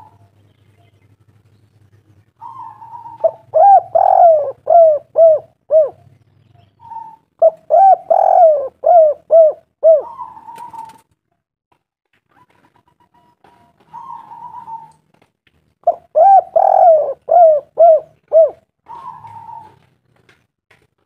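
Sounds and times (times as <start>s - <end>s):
dove cooing: 2.4s - 6.1s, 6.8s - 11.0s, 13.5s - 15.1s, 15.8s - 19.9s.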